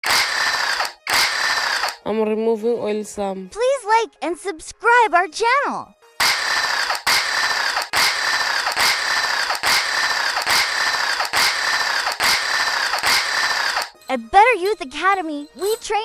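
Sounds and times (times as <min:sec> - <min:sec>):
tool grating in strokes: 0:00.0 - 0:02.0, 0:06.2 - 0:16.0.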